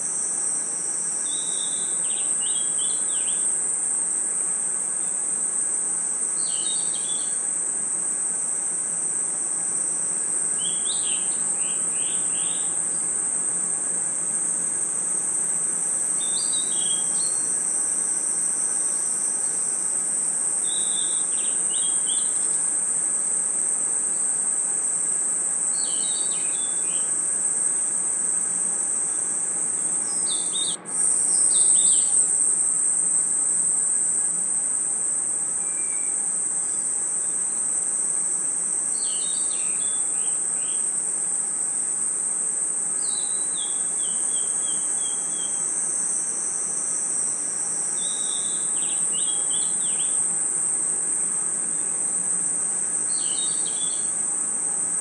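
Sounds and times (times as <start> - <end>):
crickets and insects chorus: 0.0 - 55.0
chirping calls: 53.2 - 54.1.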